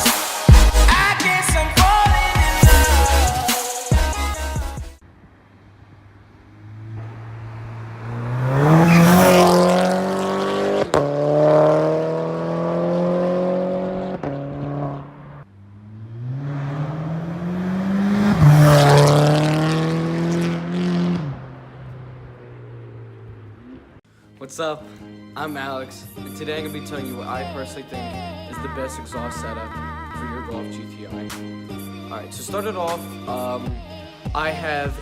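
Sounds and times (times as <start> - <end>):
car exhaust accelerating hard: 6.3 - 24.0.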